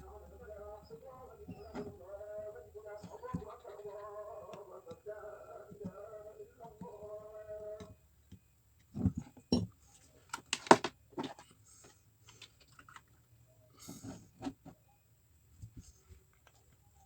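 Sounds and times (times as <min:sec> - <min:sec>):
hard objects clicking and knocking: 0:07.8 - 0:11.6.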